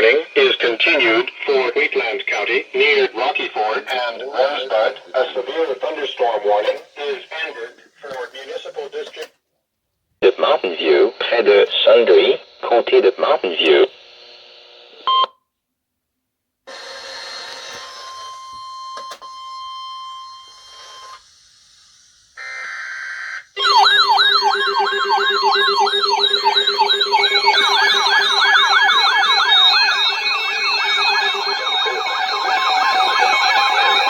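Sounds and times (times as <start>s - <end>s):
fast warbling alert tone: 23.6s - 34.0s.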